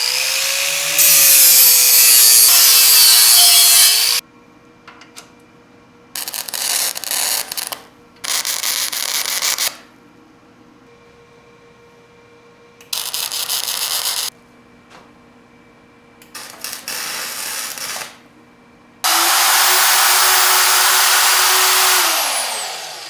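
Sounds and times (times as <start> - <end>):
power tool motor: 0.0 - 4.2, 19.1 - 23.0.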